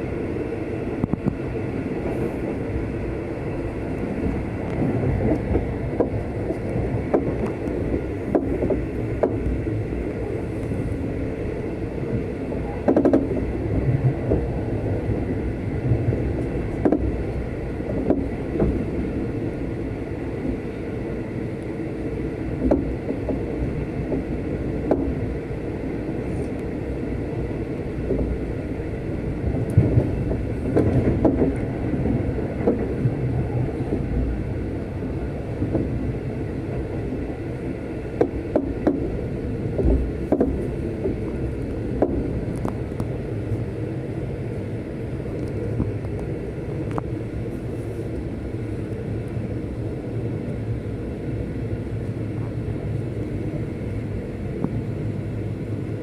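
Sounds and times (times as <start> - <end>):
train wheels rumbling on track: 0.0 - 56.0.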